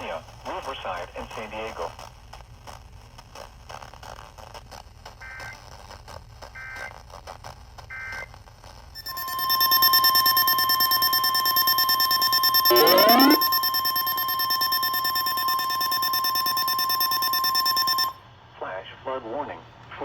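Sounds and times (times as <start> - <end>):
steady warning alarm tone: 9.0 - 18.2
warbling data chirps: 9.0 - 18.2.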